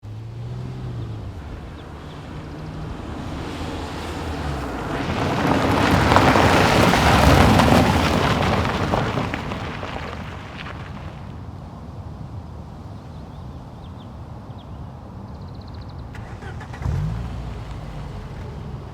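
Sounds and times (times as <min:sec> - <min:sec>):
vehicle passing by: 0:00.0 - 0:10.7.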